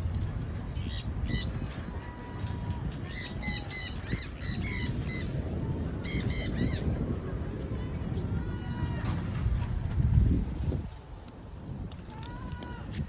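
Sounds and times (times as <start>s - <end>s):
parrots squawking: 3.1s - 5.3s.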